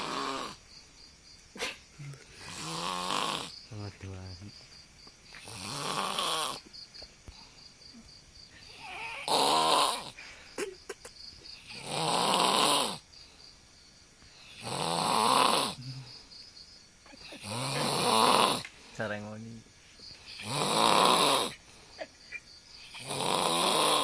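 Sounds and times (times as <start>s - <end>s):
person snoring harshly: 0.0s - 0.6s, 2.4s - 3.5s, 5.4s - 6.6s, 8.8s - 10.2s, 11.6s - 13.0s, 14.5s - 16.0s, 17.4s - 18.6s, 20.3s - 21.6s, 22.9s - 24.0s.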